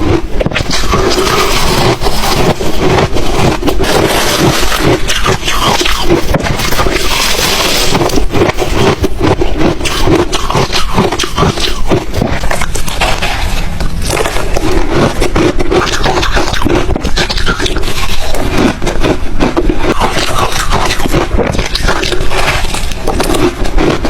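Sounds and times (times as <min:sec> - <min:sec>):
ice crunching while chewed: 0:00.0 - 0:24.0.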